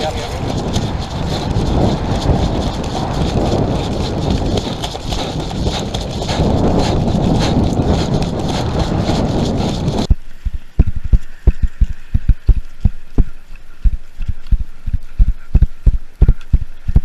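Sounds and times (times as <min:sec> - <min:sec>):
heavy running footfalls: 0:00.0 - 0:10.1
rustling: 0:00.0 - 0:10.1
wind buffeting microphone: 0:00.0 - 0:17.0.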